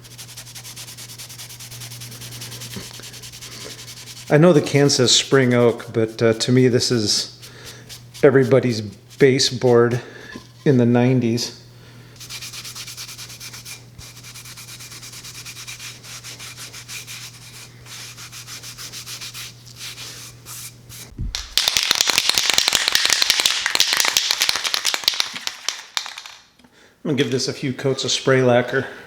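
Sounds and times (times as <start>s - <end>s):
rubbing on wooden box: 0.0s - 9.8s, 12.2s - 20.8s
steady low hum: 0.0s - 21.6s.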